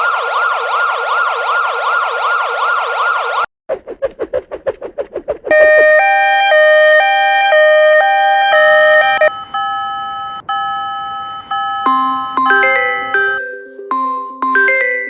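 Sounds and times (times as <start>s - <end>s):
synthesized crossing bell: 9.0s - 15.0s.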